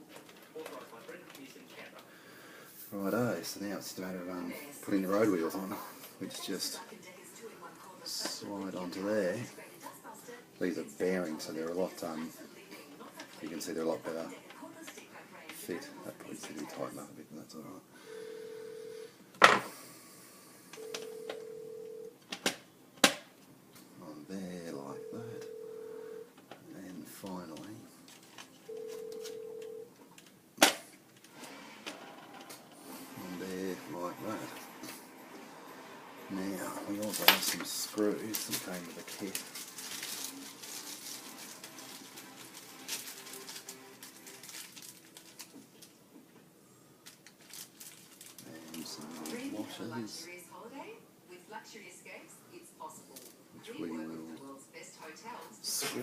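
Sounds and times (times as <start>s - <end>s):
steady telephone-like tone: 18.1s - 19.2s, 20.8s - 22.2s, 24.7s - 26.3s, 28.7s - 30.0s.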